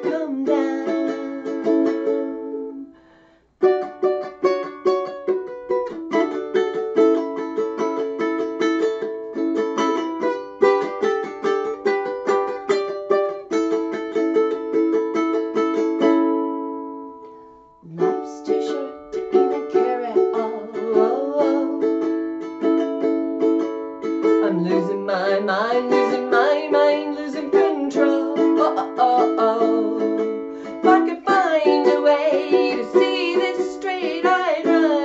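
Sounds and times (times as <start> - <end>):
ukulele strumming chords: 0.0 - 35.0.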